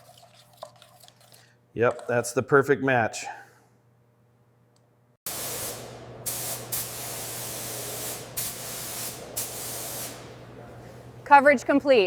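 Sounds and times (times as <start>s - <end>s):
paint spray gun hissing: 5.3s - 10.4s.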